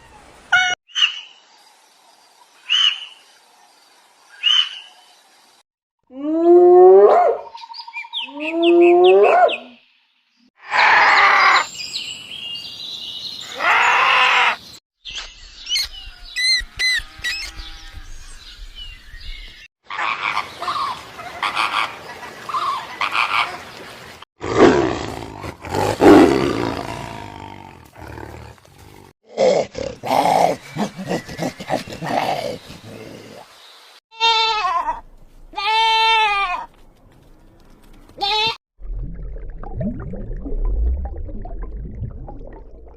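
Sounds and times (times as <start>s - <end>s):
animal calls: 29.4s - 33.5s.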